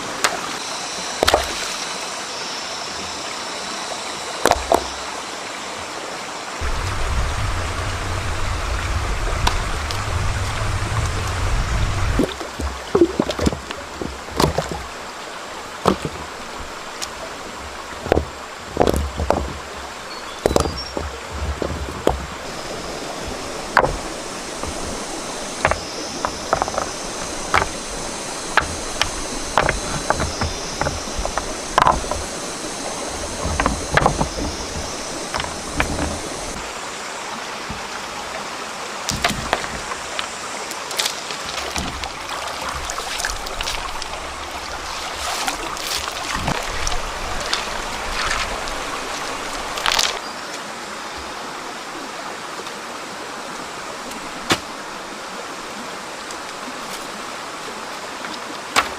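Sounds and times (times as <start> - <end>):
stream water running: 0.0 - 58.9
sharp splashes and knocks: 1.2 - 1.8, 6.6 - 15.0, 15.8 - 36.6, 39.1 - 50.2, 54.1 - 54.8.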